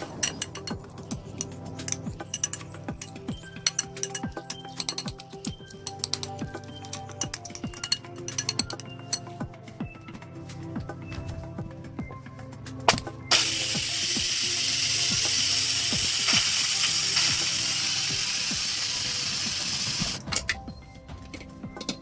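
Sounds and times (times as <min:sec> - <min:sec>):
pressure valve click: 0:12.9 - 0:20.2
steam venting hiss: 0:13.3 - 0:20.2.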